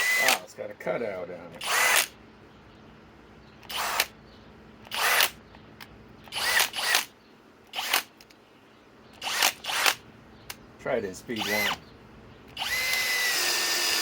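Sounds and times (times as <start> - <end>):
cordless hammer drill bursts: 0.0 - 0.4, 1.6 - 2.1, 3.7 - 4.1, 4.9 - 5.4, 6.3 - 7.1, 7.7 - 8.1, 9.2 - 10.0, 11.4 - 11.8, 12.5 - 14.0.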